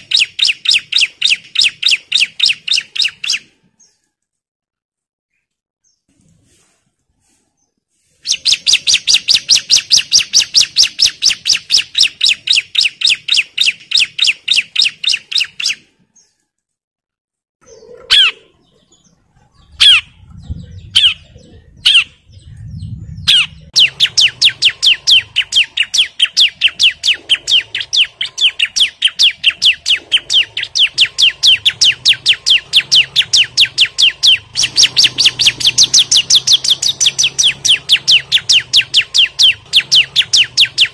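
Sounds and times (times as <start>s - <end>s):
bird song rapid sharp notes: 0.0s - 4.2s, 8.2s - 16.4s, 17.6s - 40.9s
bird single calls: 17.6s - 20.2s.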